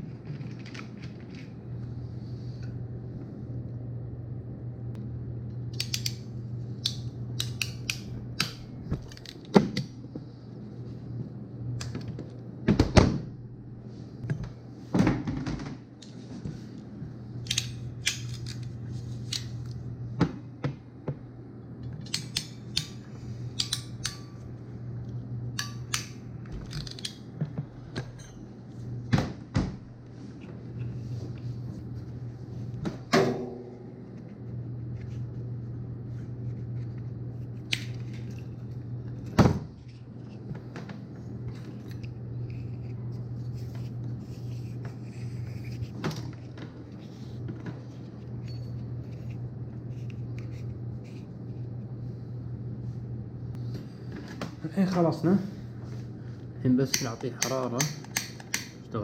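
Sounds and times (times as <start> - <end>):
steady low hum: 0.0 - 59.0
hand tools cutting wire: 57.0 - 58.8.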